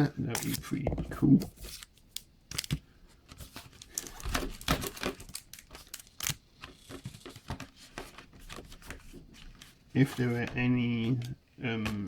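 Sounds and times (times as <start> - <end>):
card packaging crinkling and tearing: 0.3 - 9.0.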